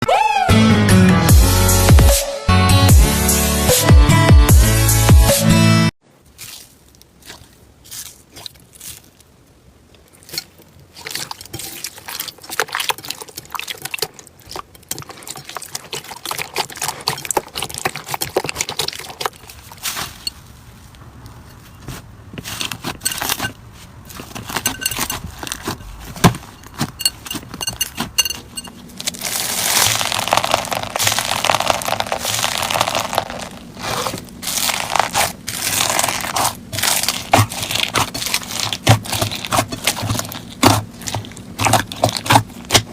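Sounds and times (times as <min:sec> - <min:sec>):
slime crackling and crunching: 0:10.0 - 0:42.9.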